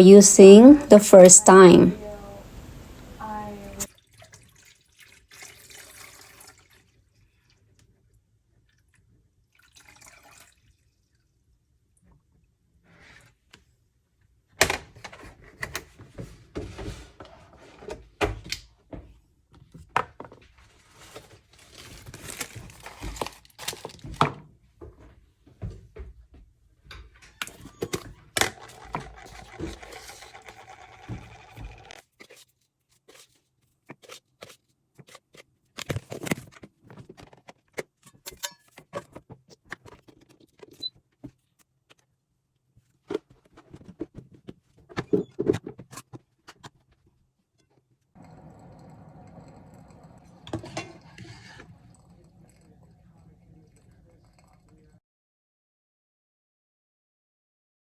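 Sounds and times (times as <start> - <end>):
objects knocking and scraping: 47.7 - 53.0.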